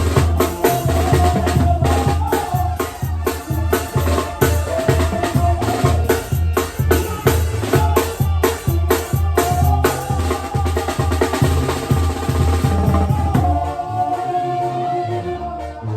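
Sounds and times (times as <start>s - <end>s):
snare drum band music: 0.0s - 14.8s
steady bass pulse: 9.7s - 15.9s.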